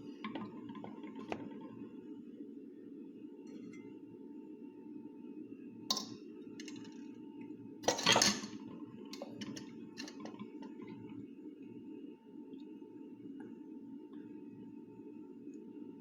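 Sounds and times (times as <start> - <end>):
utensils clinking against pots: 3.5 - 4.0, 5.9 - 6.9, 7.8 - 10.9.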